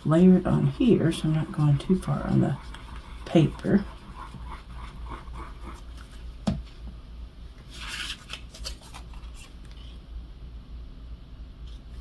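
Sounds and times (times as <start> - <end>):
paper rustling: 7.7 - 10.0.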